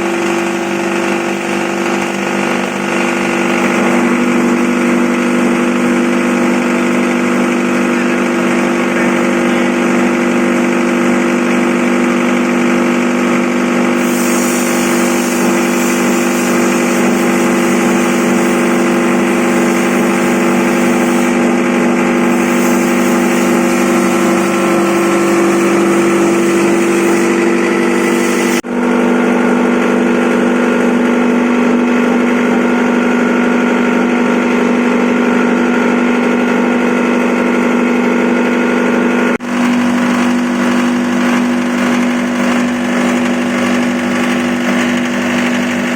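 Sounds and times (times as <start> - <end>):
grinding machine humming: 0.0 - 45.9
rushing hiss: 14.0 - 21.3.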